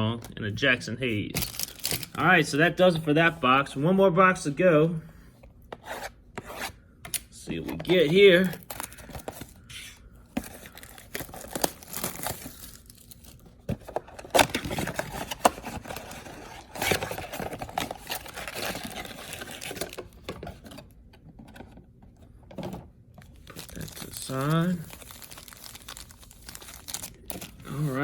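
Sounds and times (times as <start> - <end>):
plastic wrapping crinkling and tearing: 1.4 - 2.2, 10.5 - 13.6, 14.2 - 20.0, 23.4 - 28.0.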